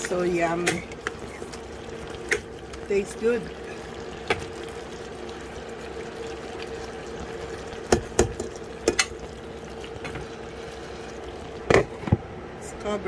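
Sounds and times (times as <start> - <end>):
stew bubbling in a pot: 0.0 - 13.0
utensil knocking on a pot: 7.9 - 9.1.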